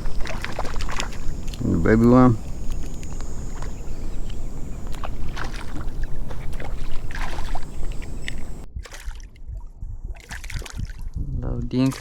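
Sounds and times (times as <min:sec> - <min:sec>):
low rumble: 0:00.0 - 0:11.8
shallow water sloshing and splashing: 0:00.0 - 0:12.0.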